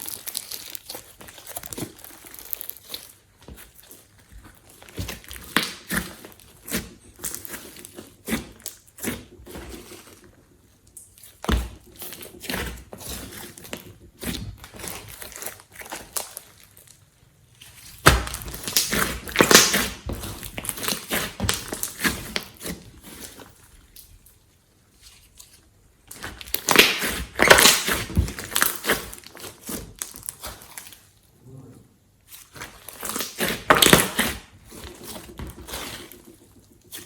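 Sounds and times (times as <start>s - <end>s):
slime squelching and popping: 0.0s - 31.3s, 32.2s - 37.0s.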